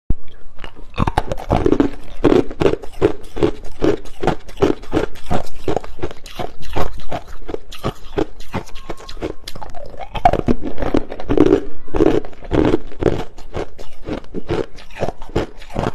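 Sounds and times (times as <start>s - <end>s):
person chewing crushed ice: 0.3s - 15.9s.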